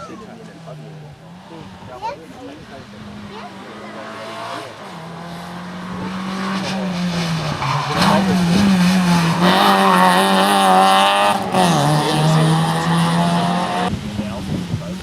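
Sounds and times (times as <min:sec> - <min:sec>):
rally car engine at high revs: 0:00.6 - 0:15.0.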